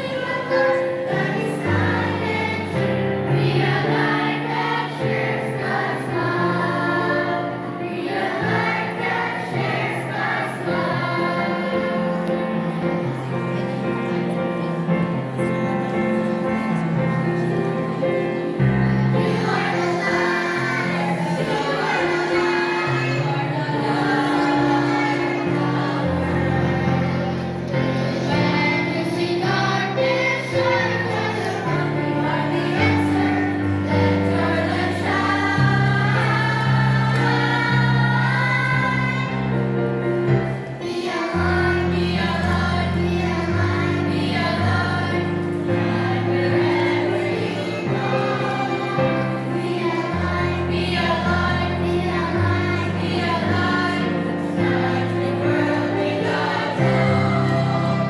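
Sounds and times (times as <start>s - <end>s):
children's choir singing: 0.0s - 58.0s.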